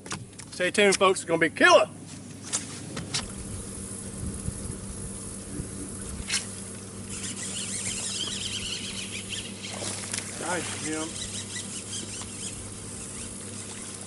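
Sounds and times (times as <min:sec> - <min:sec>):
low motor hum: 0:00.0 - 0:14.0
high chirping: 0:07.1 - 0:09.8.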